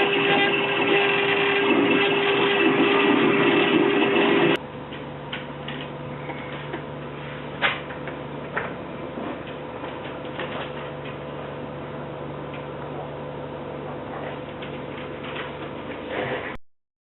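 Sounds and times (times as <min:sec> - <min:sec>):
engraving machine humming: 0:00.0 - 0:04.6.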